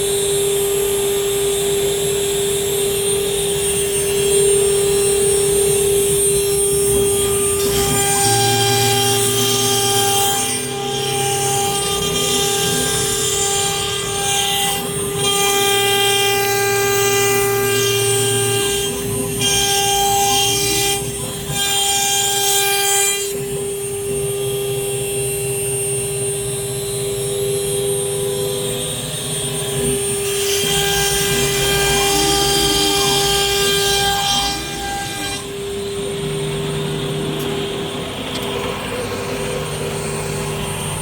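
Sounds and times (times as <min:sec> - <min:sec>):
cnc router spindle whine: 0:00.0 - 0:41.0
cutter rasping through wood: 0:02.6 - 0:23.7, 0:29.3 - 0:38.7.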